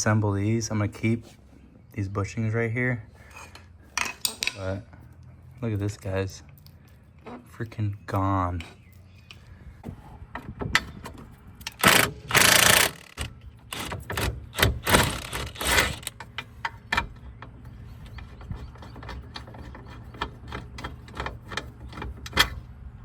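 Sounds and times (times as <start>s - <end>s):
metal clanks and clicks: 3.3s - 4.8s, 9.3s - 22.7s
power tool bursts: 11.8s - 13.9s.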